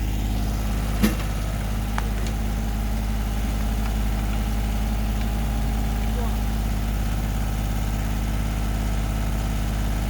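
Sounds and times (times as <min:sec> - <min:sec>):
diesel tractor engine running: 0:00.0 - 0:10.0.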